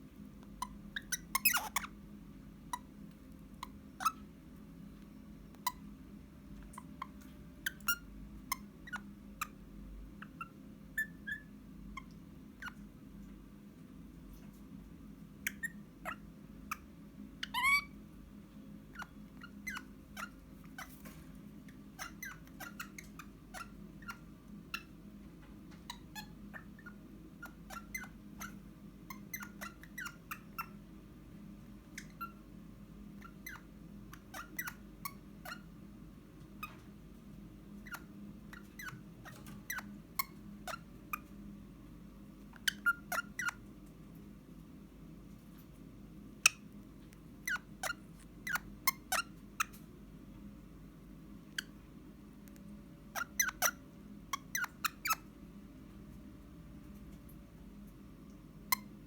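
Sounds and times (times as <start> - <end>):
faint steady hum: 0.0 - 59.0
parrot chirps and clicks: 0.4 - 1.9, 6.6 - 9.6, 15.4 - 17.9, 19.0 - 21.1, 21.7 - 25.0, 25.7 - 30.8, 31.9 - 32.4, 33.2 - 35.6, 37.8 - 41.4, 42.5 - 44.0, 46.4 - 49.9, 52.4 - 55.3.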